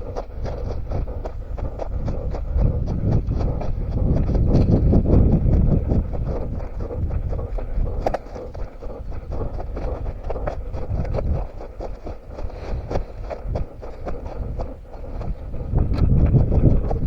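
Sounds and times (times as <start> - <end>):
running footsteps on forest ground: 0.0 - 17.0
wind rumbling on microphone: 0.0 - 17.0.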